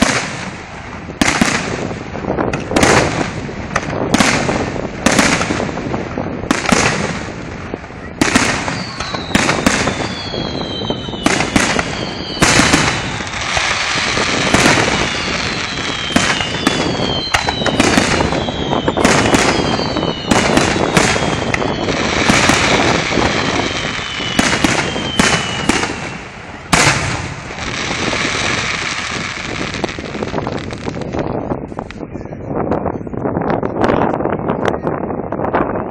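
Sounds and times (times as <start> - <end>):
firework whistles gliding down: 8.3 - 31.1.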